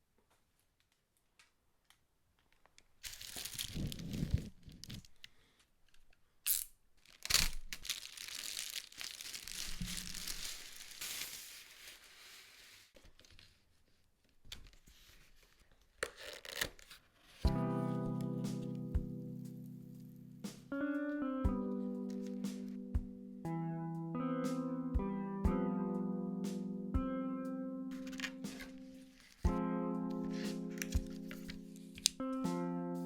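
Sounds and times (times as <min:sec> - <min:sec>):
packaging tearing and rustling: 0:03.0 - 0:05.2, 0:06.5 - 0:12.6, 0:15.4 - 0:17.4, 0:28.0 - 0:29.5, 0:30.1 - 0:32.2.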